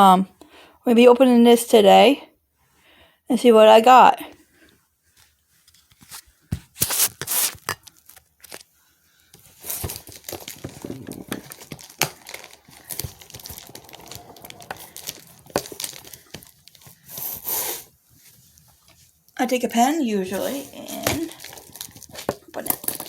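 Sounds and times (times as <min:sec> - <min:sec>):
plastic wrapping crinkling: 0:05.1 - 0:17.5, 0:18.1 - 0:23.0.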